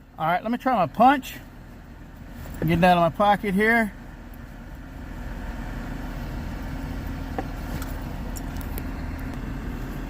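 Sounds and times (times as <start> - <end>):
low engine rumble: 0.0 - 10.0
faint clicks and rustles: 7.3 - 9.4.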